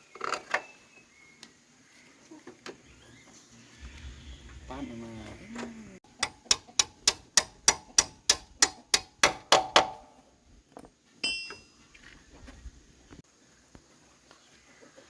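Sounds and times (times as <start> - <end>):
hammer ringing on metal: 6.2 - 10.1.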